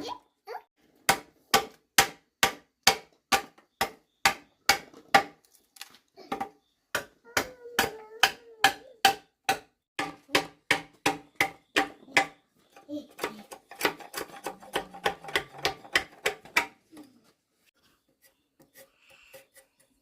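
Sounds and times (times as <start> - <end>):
tool striking wood: 1.0 - 5.4, 6.3 - 12.4, 13.2 - 16.8.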